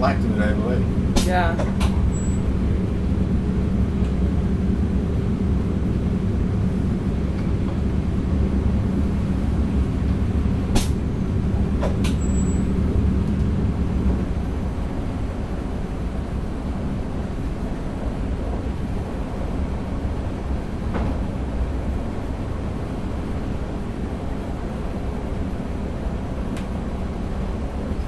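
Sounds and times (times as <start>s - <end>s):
steady hum: 0.0s - 15.3s
train running noise: 0.0s - 28.0s.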